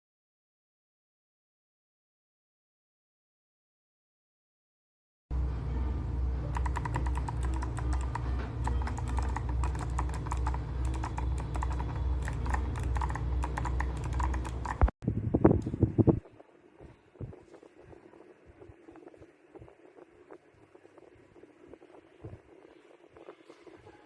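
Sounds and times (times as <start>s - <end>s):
steady low hum: 5.3s - 24.0s
fast typing on mechanical keyboard: 6.5s - 14.9s.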